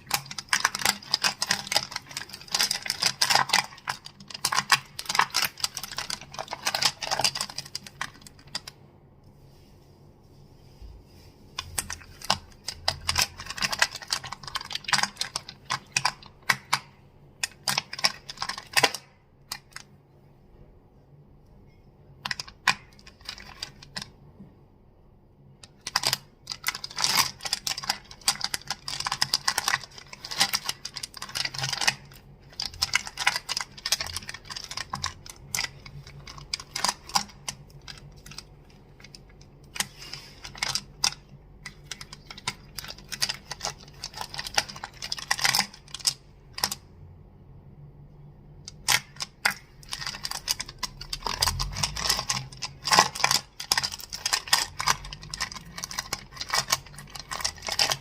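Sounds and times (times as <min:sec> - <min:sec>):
crystals clacking: 0:49.8 - 0:58.0.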